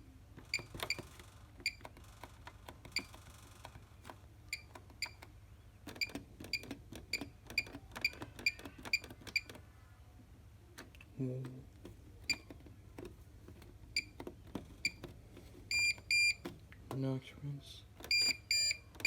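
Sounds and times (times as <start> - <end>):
washing machine panel beeps: 4.5 - 5.2, 15.7 - 16.4, 18.0 - 19.0.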